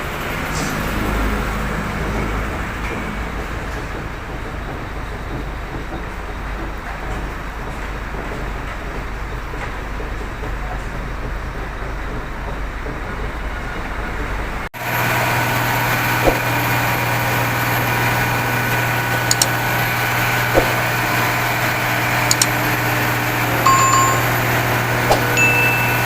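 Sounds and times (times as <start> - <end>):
construction machinery engine drone: 0.0 - 26.0
knocks and clicks: 16.2 - 16.5, 19.3 - 19.5, 20.6 - 20.8, 22.3 - 22.5, 23.7 - 24.4
short high beeps: 23.7 - 24.4, 25.1 - 26.0.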